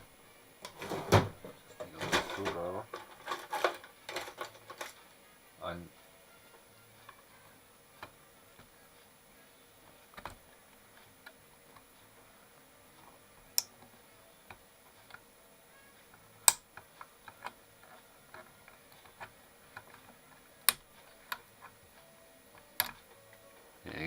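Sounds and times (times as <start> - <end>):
small tools tapping on plastic: 1.8 - 5.0.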